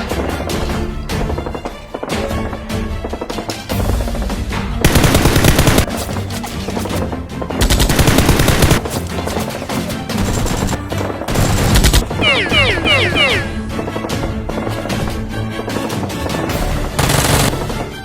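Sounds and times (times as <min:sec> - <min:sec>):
background music: 0:00.0 - 0:18.0
rapid automatic gunfire: 0:04.8 - 0:05.9, 0:07.5 - 0:08.9, 0:10.2 - 0:17.8.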